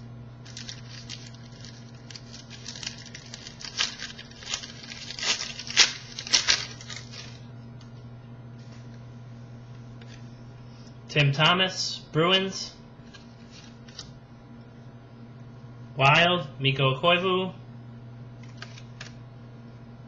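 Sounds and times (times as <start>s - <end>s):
low electrical hum: 0.0s - 20.0s
foil pack crinkling and tearing: 0.4s - 7.4s, 18.4s - 19.2s.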